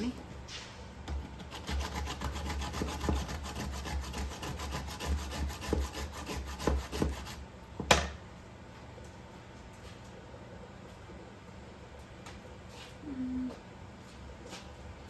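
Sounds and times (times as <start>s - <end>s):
cheese grating rasping: 1.3s - 7.4s.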